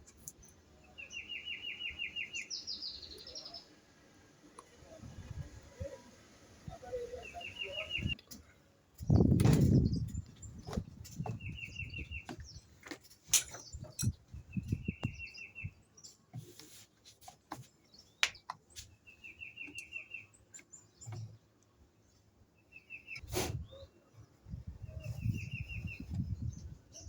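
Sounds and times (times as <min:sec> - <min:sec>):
handling clicks and knocks: 0:10.6 - 0:14.3.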